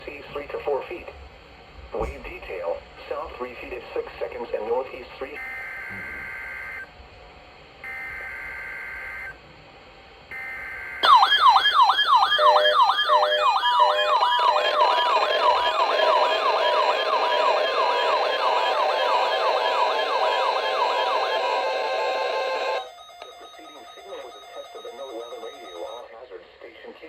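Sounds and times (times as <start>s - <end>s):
steady high alarm tone: 10.3s - 26.0s
sweeping siren-like alarm tone: 10.3s - 26.0s
screechy digital data bursts: 12.5s - 26.0s.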